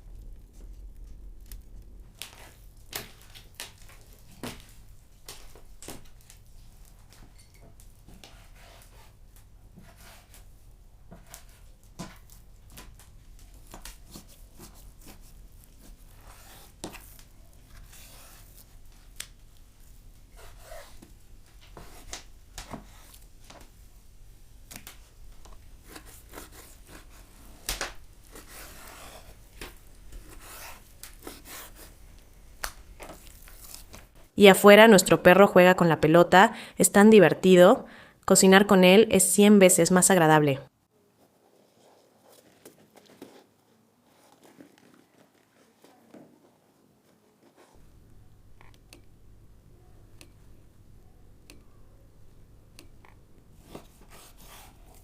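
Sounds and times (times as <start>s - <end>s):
wood fire crackling: 0.0s - 34.4s, 47.7s - 55.0s
sharp pops and snaps: 0.2s - 7.2s, 24.6s - 26.0s, 27.6s - 28.4s, 32.2s - 34.2s.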